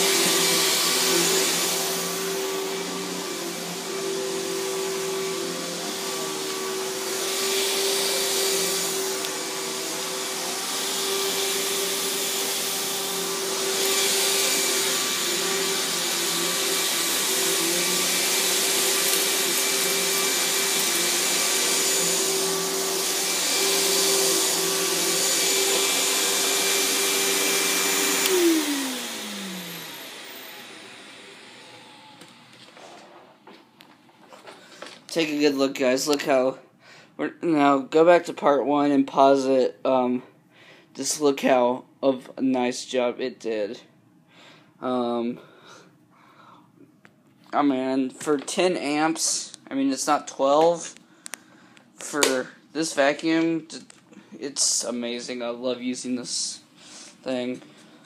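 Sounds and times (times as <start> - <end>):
vacuum motor winding down: 0.0 - 32.8
vacuum cleaner running: 0.0 - 35.4.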